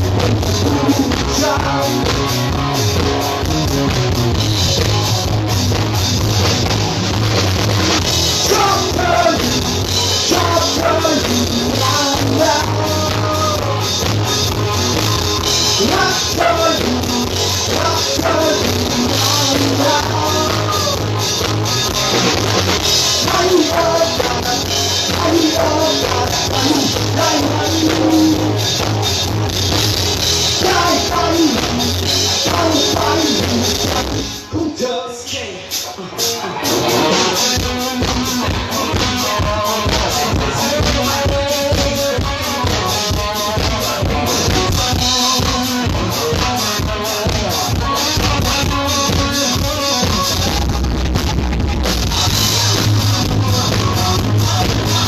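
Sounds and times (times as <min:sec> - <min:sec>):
loud rock song through pa system: 0:00.0 - 0:55.0.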